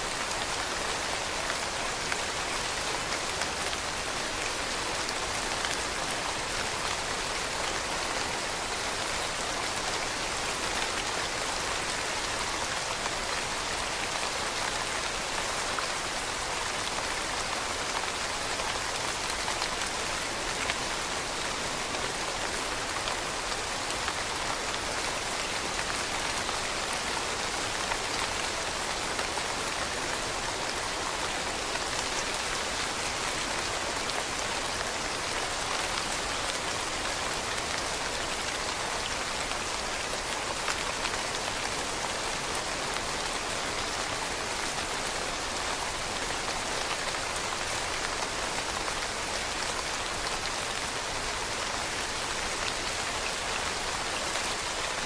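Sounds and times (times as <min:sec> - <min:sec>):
rain falling on leaves: 0:00.0 - 0:55.0.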